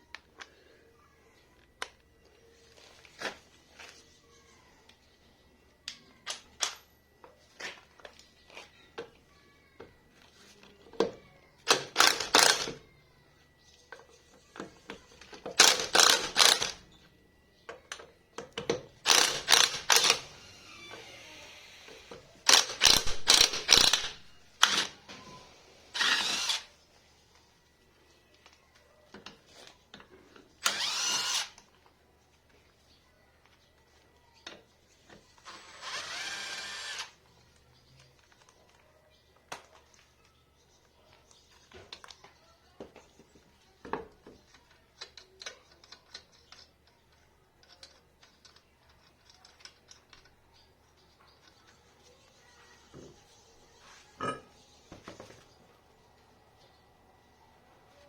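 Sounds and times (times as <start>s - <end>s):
rapid ratchet clicking: 11.7s - 12.8s, 15.6s - 16.8s, 19.0s - 20.4s, 22.4s - 25.0s, 30.6s - 31.6s, 35.4s - 37.2s.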